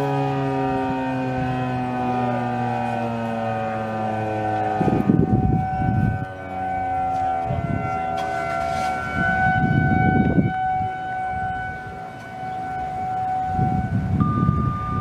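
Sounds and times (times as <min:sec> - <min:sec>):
outdoor warning sirens wailing: 0:00.0 - 0:15.0
siren winding down: 0:00.0 - 0:15.0.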